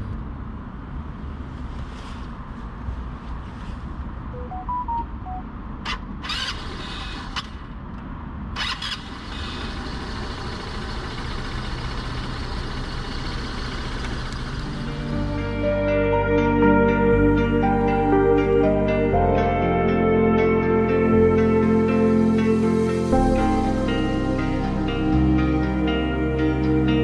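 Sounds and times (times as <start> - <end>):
short beeps: 4.4 - 5.5
scooter engine idling: 8.6 - 15.7.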